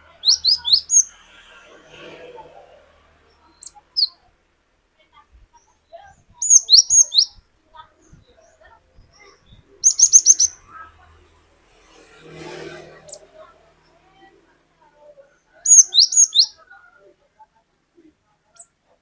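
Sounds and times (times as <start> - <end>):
bird singing whistles: 9.8 - 10.6, 15.7 - 16.6.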